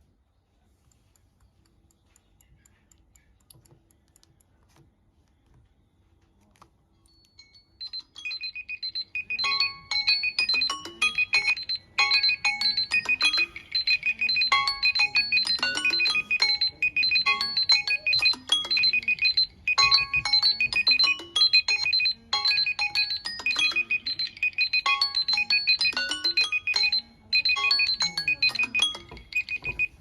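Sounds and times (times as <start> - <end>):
faint clicks and taps: 0.0 - 8.1, 27.4 - 30.0
phone timer alarm beeping: 7.3 - 30.0.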